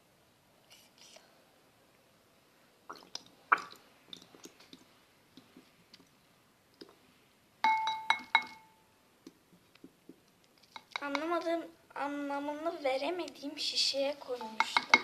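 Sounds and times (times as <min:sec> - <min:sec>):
taps ringing a hard dish: 0:07.6 - 0:08.7.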